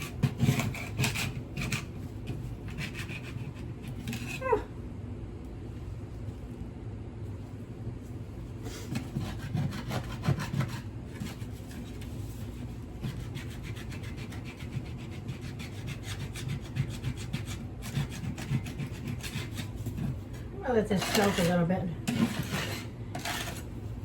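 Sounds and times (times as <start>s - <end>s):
hand scraper scraping wooden floor: 0.0s - 1.9s, 8.7s - 12.0s, 13.0s - 20.1s, 20.9s - 23.7s.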